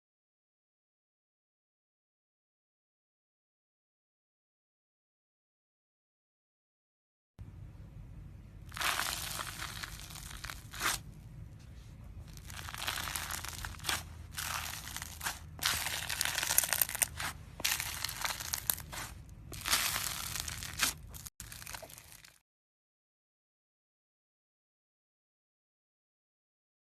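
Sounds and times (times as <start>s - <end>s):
slime crackling and popping: 8.7s - 11.1s, 12.2s - 22.4s.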